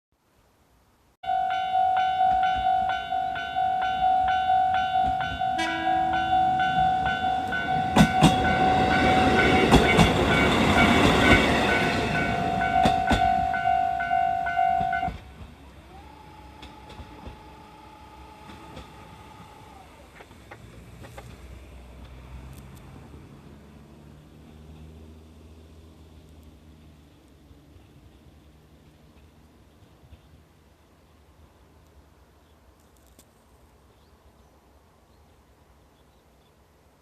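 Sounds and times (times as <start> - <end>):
train horn: 1.2 - 10.4, 11.8 - 15.2
level-crossing alarm ringing: 1.2 - 15.2
train wheels clattering: 6.7 - 13.5.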